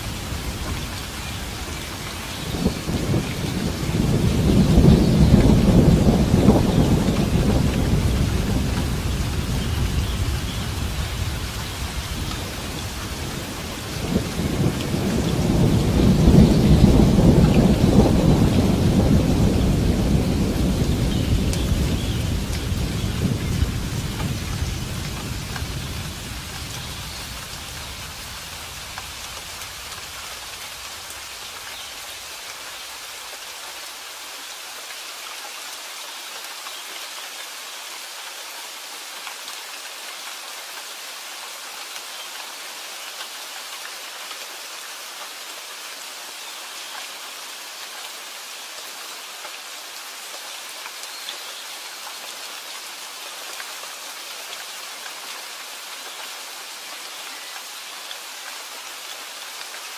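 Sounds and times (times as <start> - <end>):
steady rain: 0.0 - 59.9
thunder rolling: 2.4 - 13.3.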